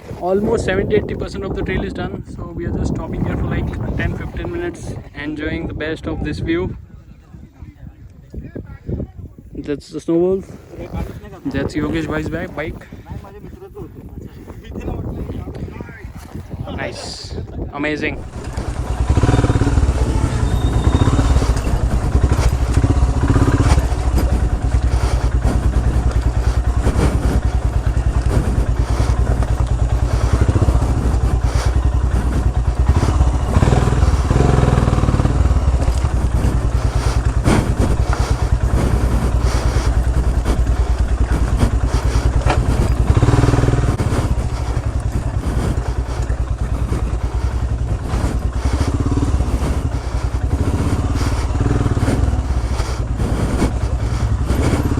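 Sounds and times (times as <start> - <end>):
motorcycle engine running: 2.6 - 5.7, 18.0 - 54.9.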